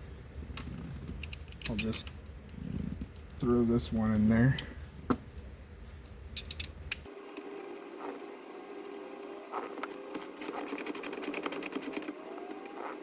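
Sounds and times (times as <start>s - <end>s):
hand ratchet clicking: 10.4s - 12.1s.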